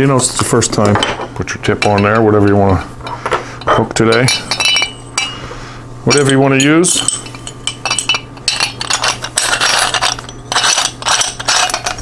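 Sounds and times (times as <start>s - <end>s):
metal parts clinking and clicking: 4.1s - 5.3s, 6.1s - 12.0s.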